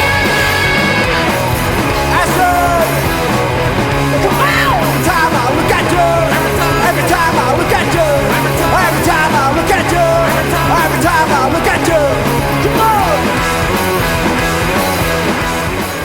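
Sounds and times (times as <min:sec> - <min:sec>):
punk rock band playing: 0:00.0 - 0:16.0
lead vocal singing: 0:01.8 - 0:14.0.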